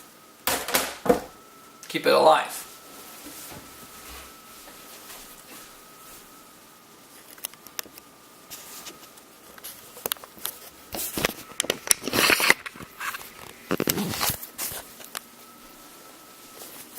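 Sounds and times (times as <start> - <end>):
rustling and scraping: 2.6 - 6.4, 8.5 - 16.9.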